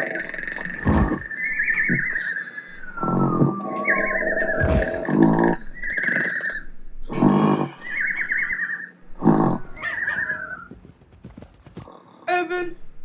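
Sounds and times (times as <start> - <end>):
person snoring with whistle: 0.0 - 8.6.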